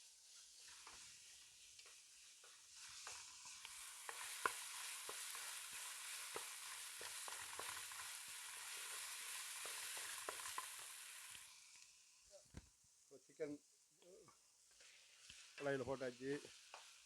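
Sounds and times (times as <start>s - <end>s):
utensil scraping a pan: 0.0s - 11.4s
food sizzling in hot oil: 0.0s - 12.3s, 14.5s - 17.0s.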